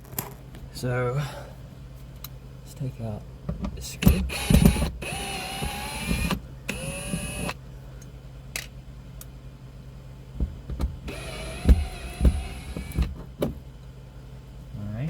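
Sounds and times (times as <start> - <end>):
drill motor whining: 4.0 - 7.6, 11.1 - 13.1.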